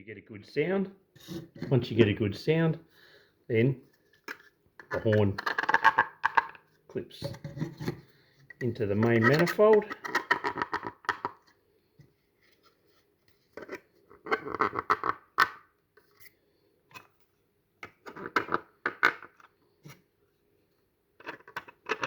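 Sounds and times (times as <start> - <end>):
plastic parts clicking and scraping: 4.1 - 11.6, 13.5 - 16.3, 17.8 - 20.0, 21.2 - 22.0.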